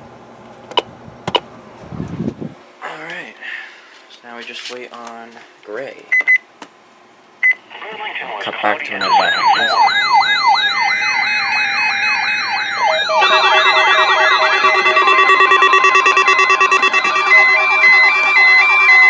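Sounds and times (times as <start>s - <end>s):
steady alarm tones: 8.9s - 19.0s
siren-like rising sweep: 9.0s - 19.0s
stepped beeping tones: 9.0s - 19.0s.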